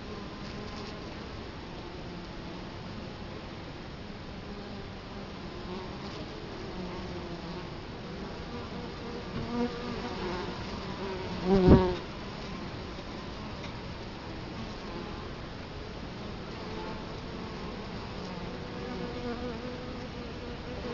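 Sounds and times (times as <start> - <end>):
single bee buzzing close: 5.6 - 12.8, 16.5 - 20.9.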